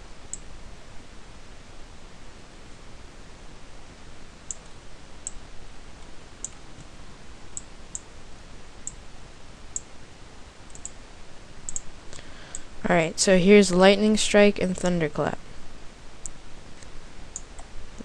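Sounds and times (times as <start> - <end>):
faint hiss: 0.0 - 14.4
computer mouse clicking: 10.7 - 11.0, 11.7 - 11.9.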